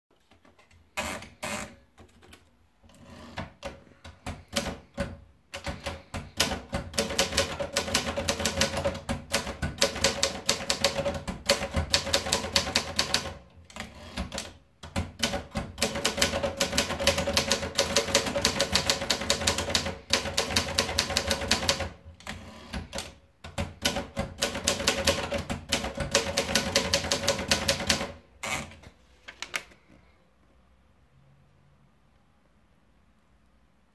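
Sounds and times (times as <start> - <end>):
manual typewriter key strikes: 4.1 - 28.2.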